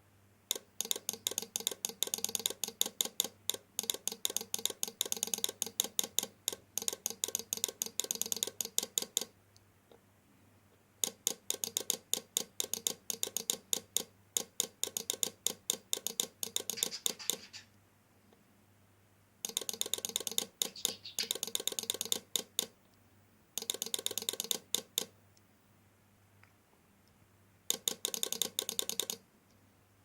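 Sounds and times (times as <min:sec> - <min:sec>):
faint steady hum: 0:00.0 - 0:30.0
rapid rhythmic clicking: 0:11.0 - 0:17.6, 0:27.7 - 0:29.2.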